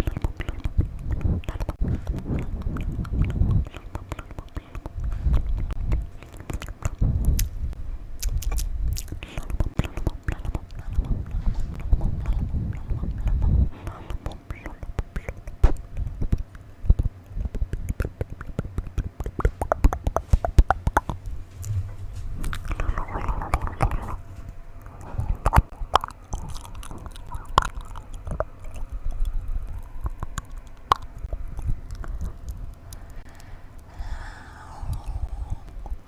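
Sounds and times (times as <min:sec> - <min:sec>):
wet mouth clicks and smacks: 0:00.0 - 0:36.0
breathy hissing sound: 0:32.9 - 0:36.0.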